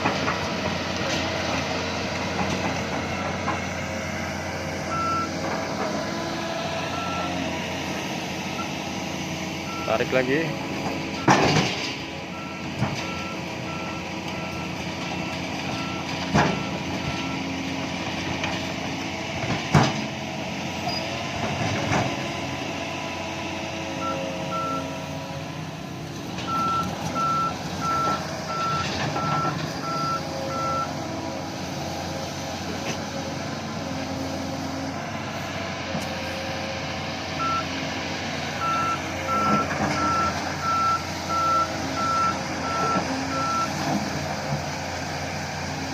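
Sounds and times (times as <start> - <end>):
diesel engine running: 0.0 - 45.9
reversing alarm beeping: 4.9 - 5.4, 6.9 - 7.4, 9.6 - 10.1, 24.0 - 25.1, 26.5 - 31.0, 37.4 - 37.7, 38.6 - 43.8.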